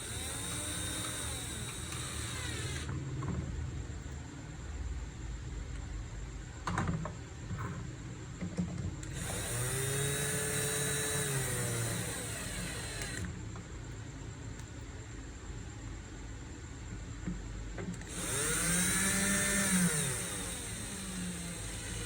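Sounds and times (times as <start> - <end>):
small electric motor whirring: 0.0 - 2.9, 9.1 - 13.4, 18.0 - 22.0.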